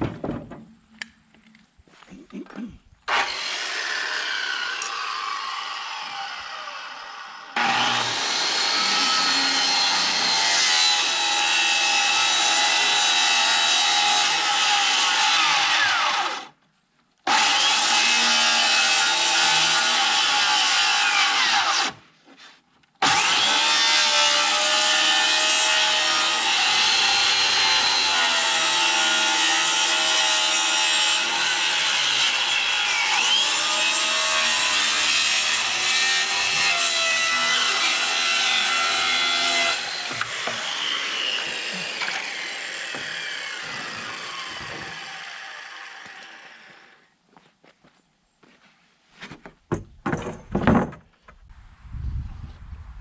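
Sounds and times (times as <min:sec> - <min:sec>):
circular saw cutting wood: 0:03.1 - 0:16.6, 0:17.2 - 0:22.0, 0:23.0 - 0:47.0.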